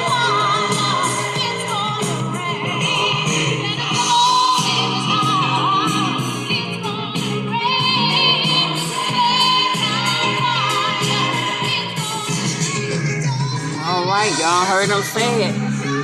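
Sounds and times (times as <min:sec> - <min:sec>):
gospel song with singing: 0:00.0 - 0:16.0.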